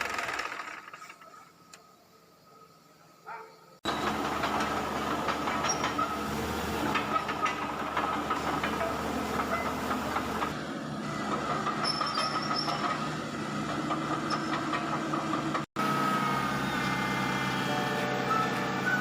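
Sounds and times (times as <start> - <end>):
excavator diesel engine running: 3.8 - 19.0.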